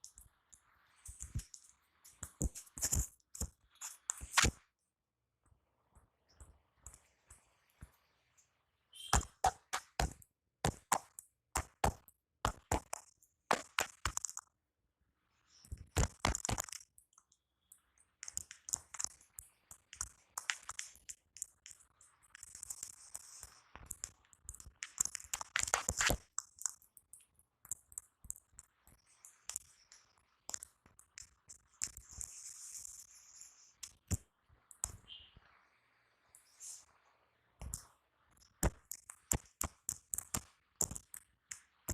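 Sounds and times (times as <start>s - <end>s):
hands slapping and chopping skin: 4.1s - 4.6s, 9.1s - 14.5s, 16.0s - 16.8s, 38.6s - 41.1s.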